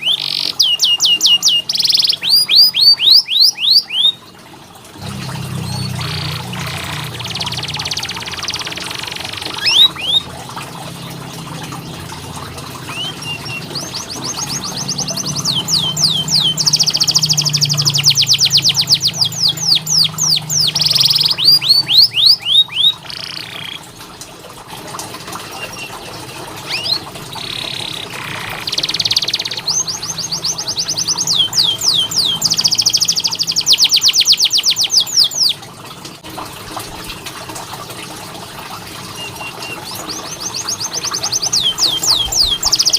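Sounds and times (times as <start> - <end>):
canary chirps: 0.0 - 4.2, 5.1 - 10.3, 12.9 - 23.8, 25.5 - 35.6, 39.1 - 42.9
canary trilling: 0.0 - 4.2, 5.0 - 10.3, 12.8 - 23.8, 25.5 - 35.6, 39.2 - 42.9.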